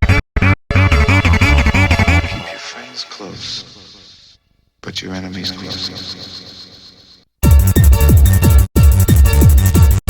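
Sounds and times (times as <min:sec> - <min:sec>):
synth sounds: 0:00.7 - 0:04.5.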